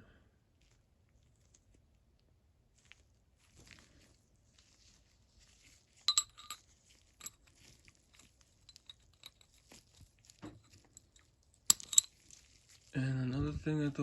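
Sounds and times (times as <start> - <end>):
ringing metal clinks: 6.1 - 6.6, 11.7 - 12.1
steel parts ticking and tapping: 6.1 - 6.6, 11.7 - 12.1.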